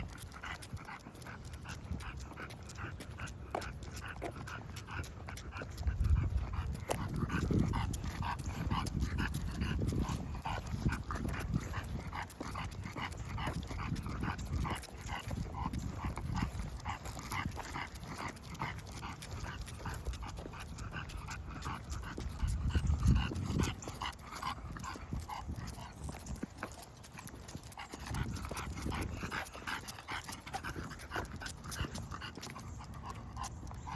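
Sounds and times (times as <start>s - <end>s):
dog panting heavily: 0.0s - 33.9s.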